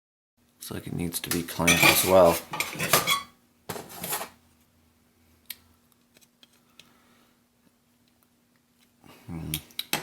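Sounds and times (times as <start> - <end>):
faint steady hum: 0.4 - 10.0
metal hand tools clattering: 1.6 - 3.3.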